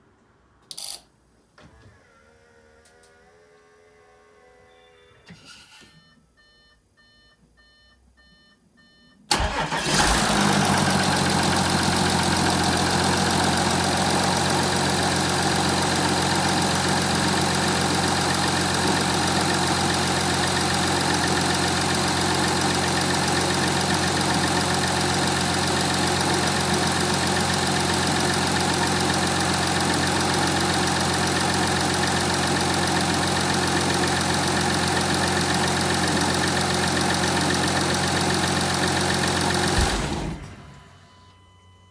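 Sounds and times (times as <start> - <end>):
diesel engine starting and idling: 9.3 - 41.1.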